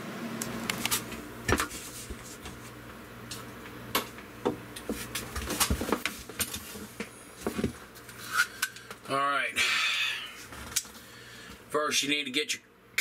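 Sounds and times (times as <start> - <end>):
objects being handled and set down: 4.0 - 9.0.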